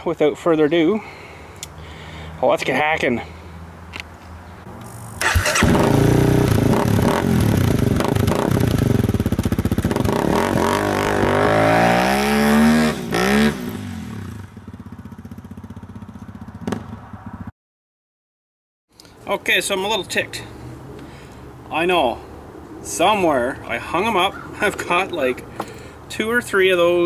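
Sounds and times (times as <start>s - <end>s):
engine running and revving: 4.8s - 17.0s.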